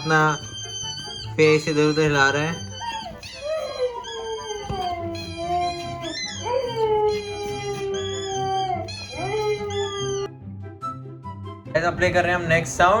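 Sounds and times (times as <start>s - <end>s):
dog howling: 0.0s - 10.3s.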